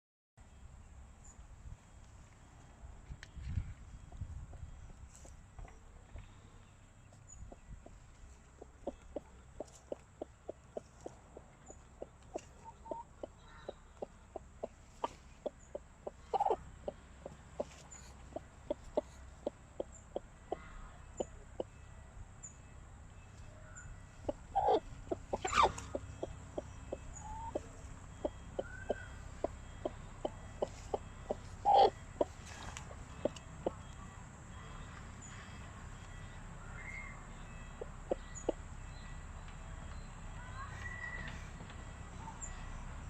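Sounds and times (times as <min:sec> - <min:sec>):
hen clucking: 0:07.4 - 0:21.8, 0:23.4 - 0:39.2
hen calling: 0:07.4 - 0:43.0.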